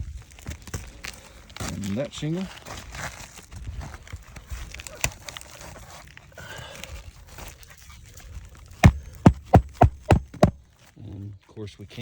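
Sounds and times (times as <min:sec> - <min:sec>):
handling shingles: 0:08.8 - 0:10.6
hatchet striking nail: 0:08.8 - 0:10.6.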